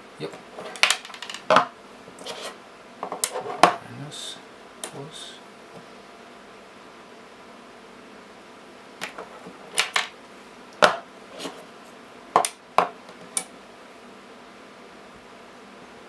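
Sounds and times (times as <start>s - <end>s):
battery cells clicking into charger: 12.4s - 12.6s.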